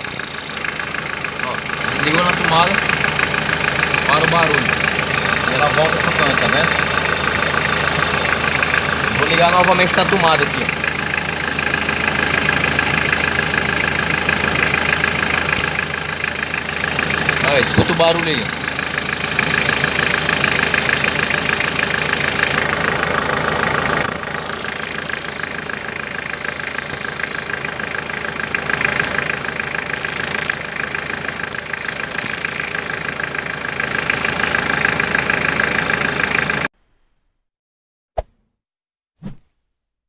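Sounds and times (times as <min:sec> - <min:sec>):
valve making constant noise: 0:00.0 - 0:00.6, 0:24.1 - 0:27.5, 0:29.9 - 0:36.7
diesel engine idling: 0:00.0 - 0:36.7.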